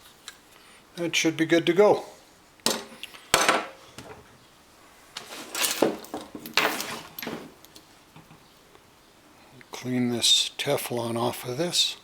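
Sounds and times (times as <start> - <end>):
metal parts clinking and scraping: 5.3 - 7.8
metal parts clunking: 5.3 - 7.8.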